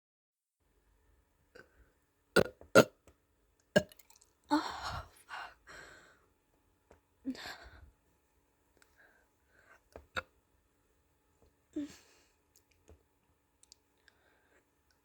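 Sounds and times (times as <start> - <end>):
person burping: 2.4 - 2.9, 3.8 - 4.1.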